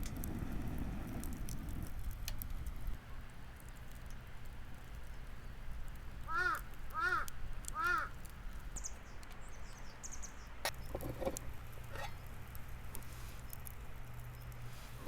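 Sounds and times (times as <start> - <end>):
crow cawing: 6.3 - 8.2
small bird chirping: 8.7 - 11.0.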